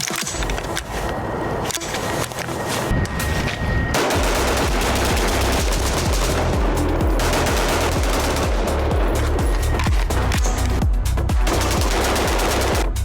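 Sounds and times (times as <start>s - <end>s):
automatic gunfire: 4.0s - 9.1s, 11.5s - 12.8s
music with heavy bass beat: 4.0s - 13.0s.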